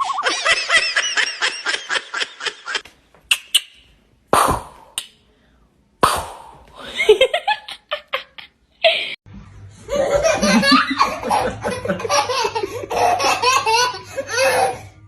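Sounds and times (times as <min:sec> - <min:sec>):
people laughing: 0:00.0 - 0:02.8, 0:09.8 - 0:14.6.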